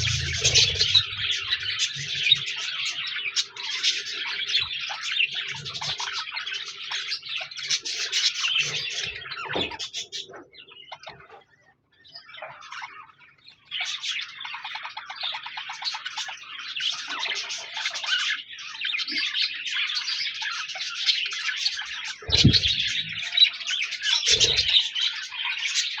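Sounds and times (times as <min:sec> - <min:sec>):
budgerigars chattering and warbling: 0:00.0 - 0:26.0
short low sounds: 0:22.3 - 0:23.0.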